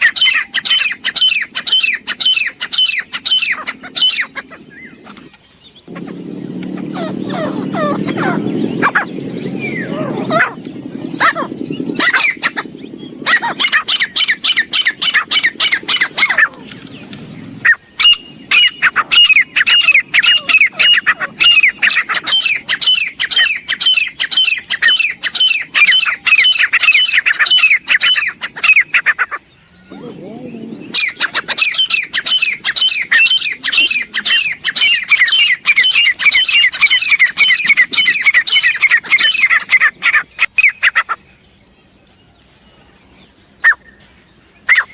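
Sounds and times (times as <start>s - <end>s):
francolin calling: 0.0s - 44.9s.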